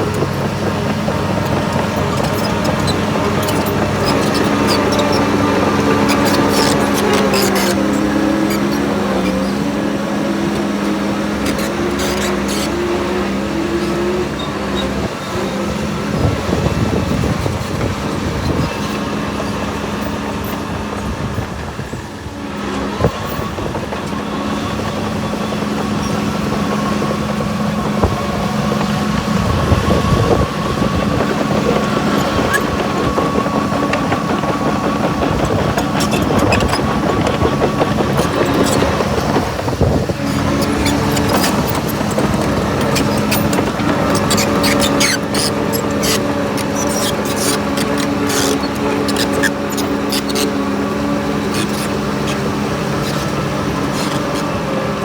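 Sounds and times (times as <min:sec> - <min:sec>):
diesel engine of heavy machinery: 0:00.0 - 0:55.0.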